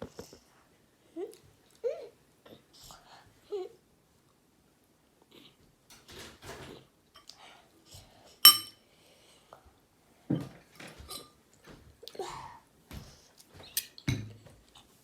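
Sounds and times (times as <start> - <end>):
tableware clinking: 8.4 - 8.8
soft knocks and scrapes of tableware: 10.3 - 11.8.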